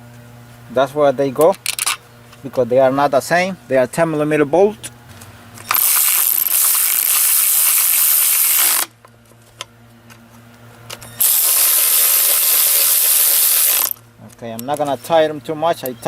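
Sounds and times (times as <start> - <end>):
ratchet spinning bolts: 5.7 - 8.9, 11.0 - 14.0.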